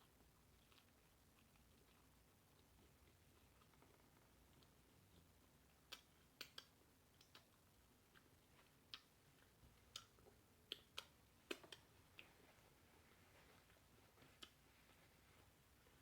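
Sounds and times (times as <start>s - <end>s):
mouth chewing food: 0.0s - 16.0s.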